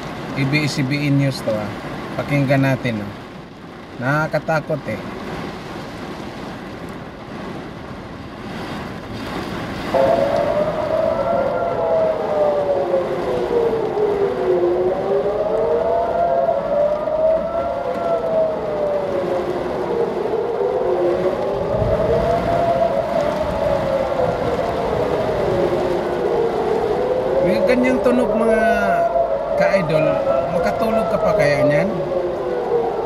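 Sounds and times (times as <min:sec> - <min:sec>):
air-raid sirens wailing: 0:09.9 - 0:33.0.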